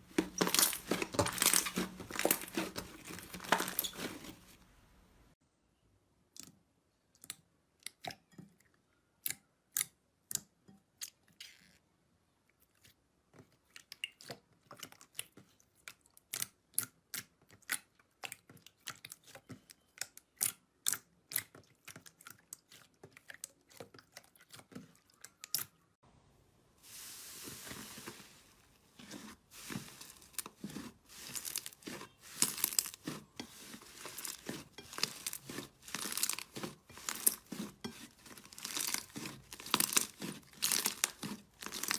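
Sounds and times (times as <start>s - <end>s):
slime crackling and popping: 0.0s - 4.3s, 29.6s - 41.9s.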